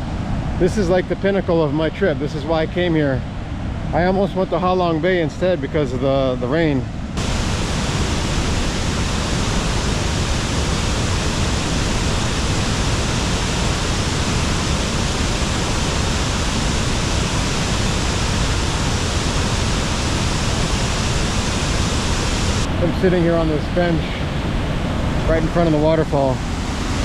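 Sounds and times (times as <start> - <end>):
waterfall rushing: 7.2 - 27.0.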